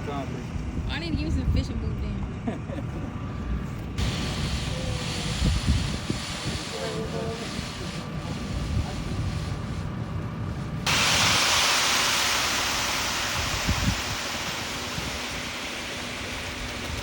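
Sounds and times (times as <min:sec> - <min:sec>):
concrete mixer truck rumbling: 0:00.0 - 0:17.0
loud rushing hiss: 0:04.0 - 0:17.0.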